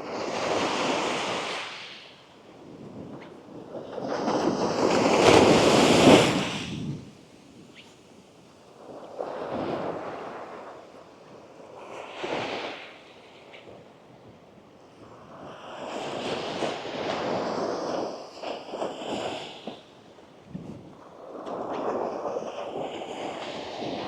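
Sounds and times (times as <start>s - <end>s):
small waves breaking on sand: 0.0s - 14.1s, 14.7s - 24.0s.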